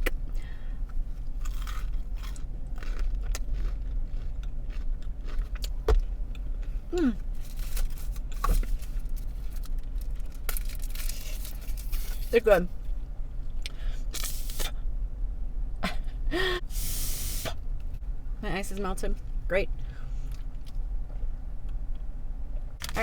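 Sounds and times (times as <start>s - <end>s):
low hum: 0.0s - 23.0s
chewing crunchy food: 1.2s - 8.0s.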